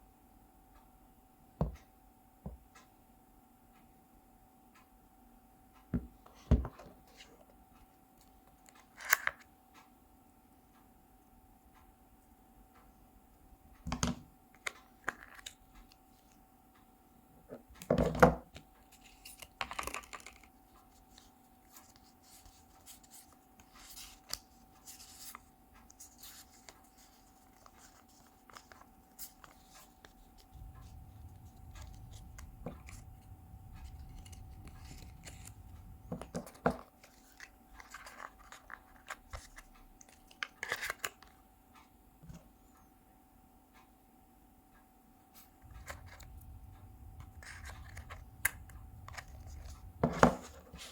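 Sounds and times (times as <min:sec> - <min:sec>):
faint steady hum: 0:00.0 - 0:50.9
low handling rumble: 0:30.1 - 0:36.8, 0:45.5 - 0:50.9.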